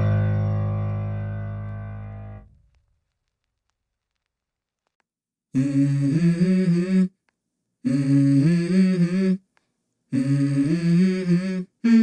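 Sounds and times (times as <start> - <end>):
person humming a melody: 5.6 - 7.2, 7.8 - 9.4, 10.1 - 12.0.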